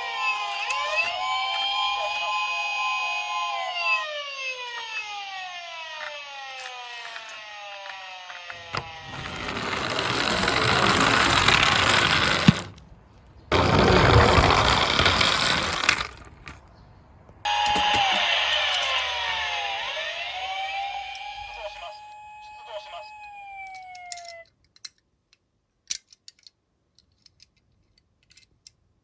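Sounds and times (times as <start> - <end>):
toy police siren: 0.0 - 10.8, 17.5 - 24.5.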